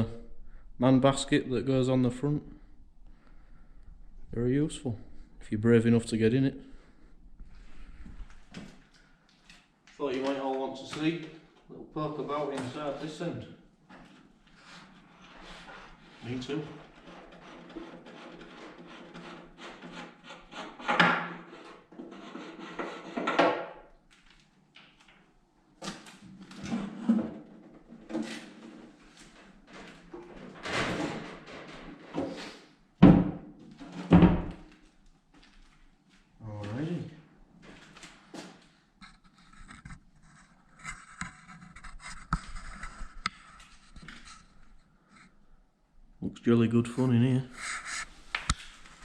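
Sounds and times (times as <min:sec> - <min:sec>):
rubbing and scraping of cover: 0:14.2 - 0:23.7, 0:39.0 - 0:45.4, 0:47.5 - 0:49.0.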